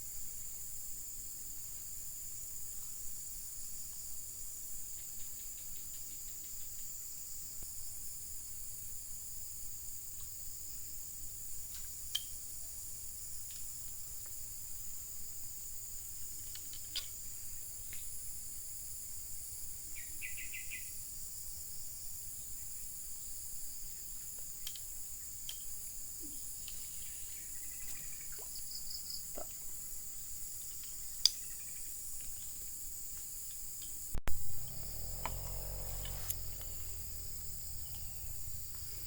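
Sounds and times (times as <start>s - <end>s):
insects hissing: 2.2s - 39.0s
rapid bird chirps: 19.9s - 21.0s.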